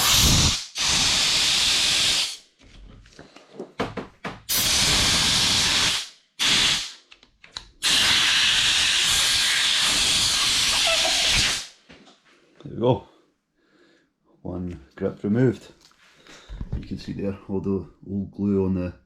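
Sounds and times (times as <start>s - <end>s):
compressed air blowgun hissing: 0.0s - 2.4s, 4.5s - 7.0s, 7.8s - 11.8s.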